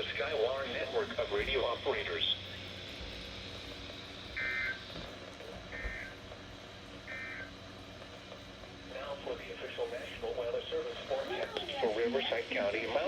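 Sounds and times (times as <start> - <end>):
warbling digital data tones: 4.4 - 4.8.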